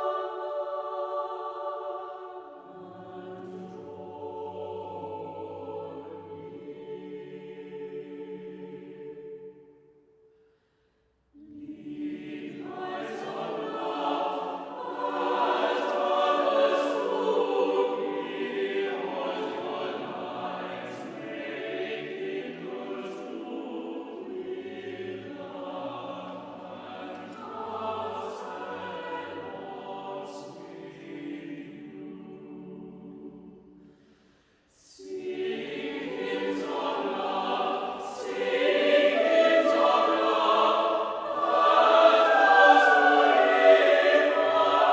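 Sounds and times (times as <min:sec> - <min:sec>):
choir singing chords: 0:00.0 - 0:44.9.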